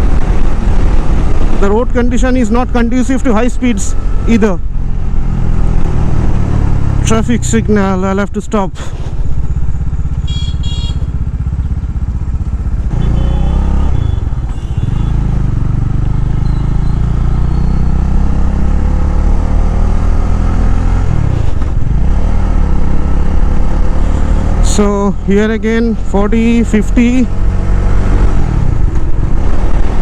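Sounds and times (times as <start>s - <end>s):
motorcycle engine running: 9.1s - 30.0s.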